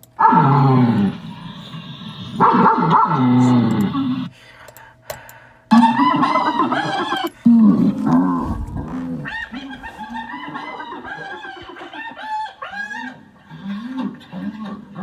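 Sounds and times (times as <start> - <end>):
animal calls: 5.8 - 14.8.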